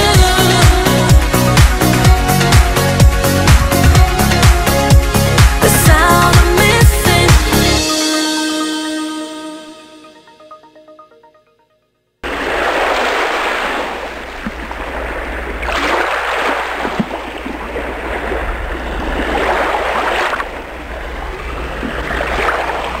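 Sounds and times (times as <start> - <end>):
low rumble: 0.0 - 7.8
sea waves washing in: 12.2 - 23.0.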